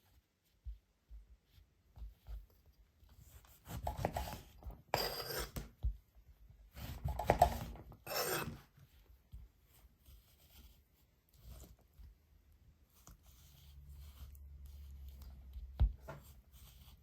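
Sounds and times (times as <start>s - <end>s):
knife rasping on food: 3.6s - 5.6s, 8.0s - 8.7s.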